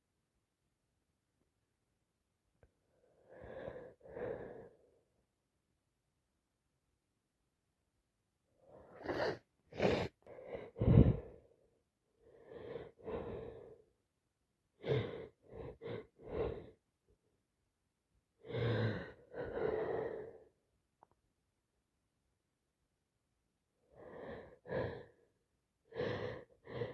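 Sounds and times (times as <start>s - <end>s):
woman gasping wheezy breaths: 8.7s - 11.5s.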